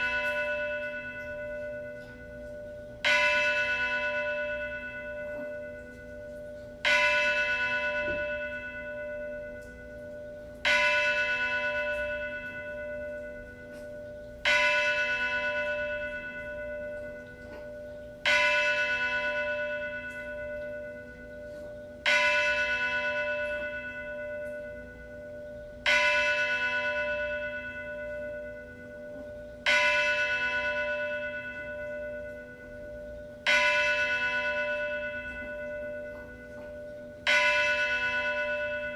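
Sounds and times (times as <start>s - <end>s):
church bell tolling: 0.0s - 38.9s.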